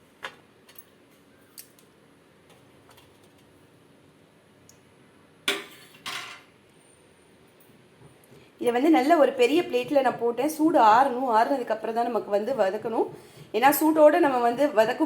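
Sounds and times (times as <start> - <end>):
utensils clinking on plates: 5.5 - 6.5.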